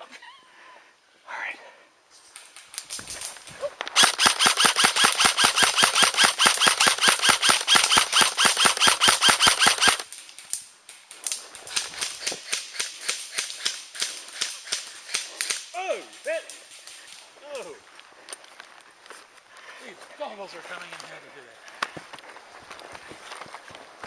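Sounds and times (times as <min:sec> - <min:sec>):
scattered distant airsoft fire: 0:03.9 - 0:10.0
airsoft gun full-auto burst: 0:03.9 - 0:10.1.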